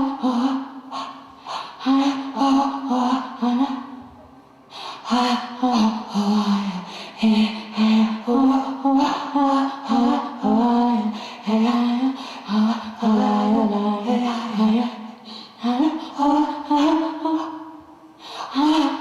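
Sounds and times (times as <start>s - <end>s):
woman singing slow melody: 0.0s - 19.0s.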